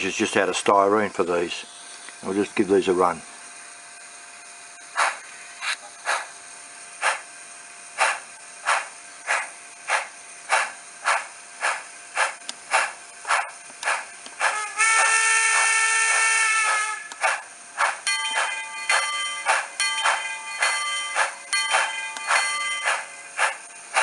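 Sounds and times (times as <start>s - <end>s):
steady steam hiss: 4.8s - 24.0s
steam locomotive exhaust chuffs: 4.9s - 7.3s, 7.9s - 24.0s
steam whistle: 14.4s - 17.2s.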